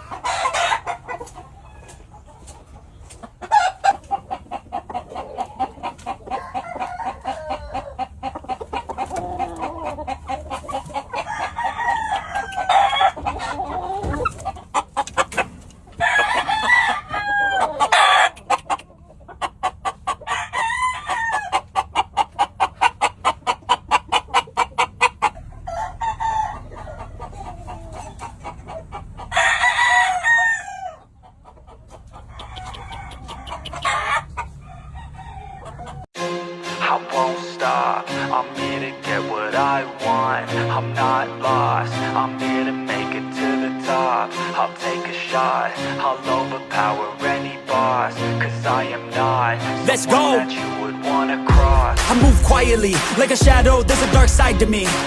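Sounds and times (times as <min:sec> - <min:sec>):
roosters crowing: 0:00.0 - 0:02.7, 0:03.4 - 0:36.1
rapid repeated clucking: 0:00.0 - 0:11.4, 0:12.4 - 0:16.7, 0:17.6 - 0:20.3, 0:21.5 - 0:25.6, 0:26.6 - 0:29.4, 0:31.0 - 0:34.6, 0:51.5 - 0:55.0.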